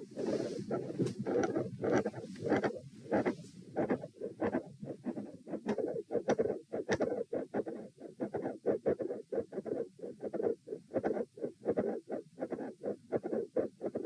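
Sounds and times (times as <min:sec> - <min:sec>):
stethoscope contact scratching: 0:00.0 - 0:14.0.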